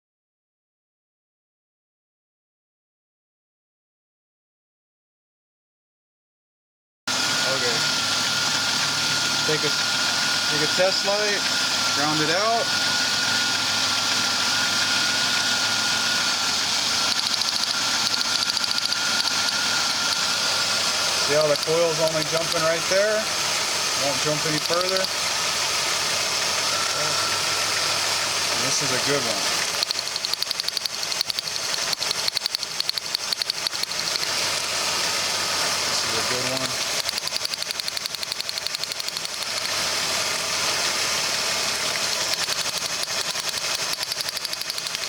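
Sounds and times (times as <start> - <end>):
car engine idling with whine: 7.2 - 45.0.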